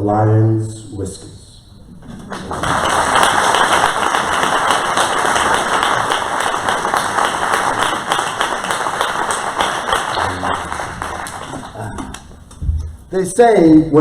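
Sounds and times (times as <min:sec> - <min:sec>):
audience applauding: 0:02.0 - 0:12.4.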